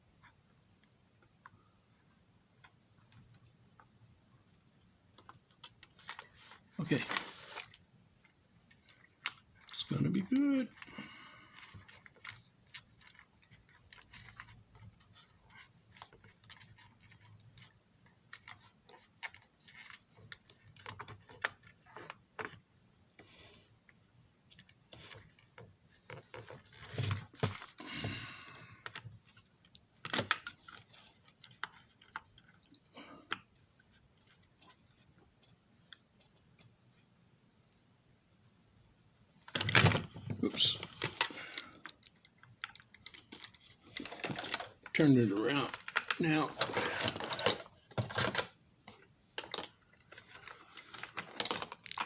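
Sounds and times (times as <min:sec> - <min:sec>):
scraping handling sound: 0:06.0 - 0:07.8.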